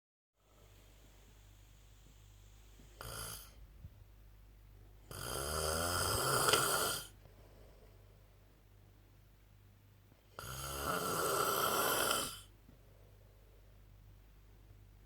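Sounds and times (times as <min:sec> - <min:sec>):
man snoring: 0:03.0 - 0:03.6, 0:05.1 - 0:07.1, 0:10.4 - 0:12.5.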